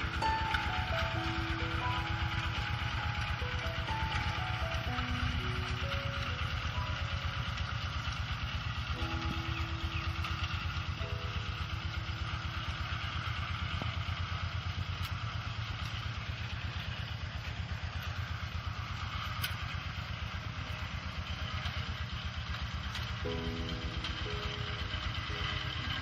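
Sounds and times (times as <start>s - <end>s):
diesel engine chugging: 0.0s - 26.0s.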